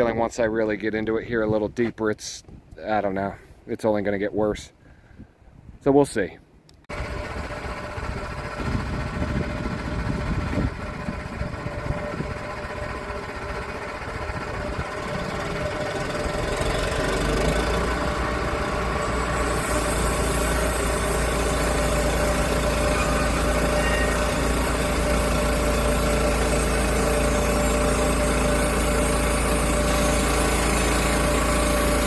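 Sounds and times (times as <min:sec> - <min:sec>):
sawmill engine running: 0:06.9 - 0:32.0.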